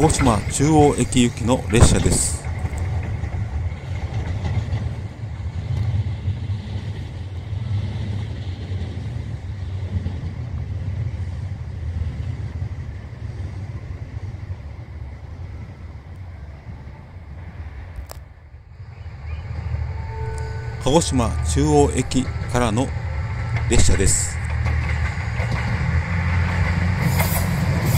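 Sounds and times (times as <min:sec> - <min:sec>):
diesel train rumbling past: 0:00.0 - 0:27.9.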